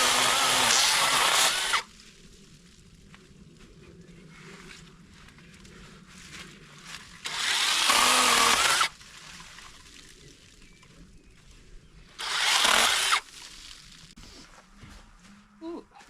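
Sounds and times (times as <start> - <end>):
chainsaw cutting brush: 0.0 - 1.9, 7.2 - 9.0, 12.2 - 13.5.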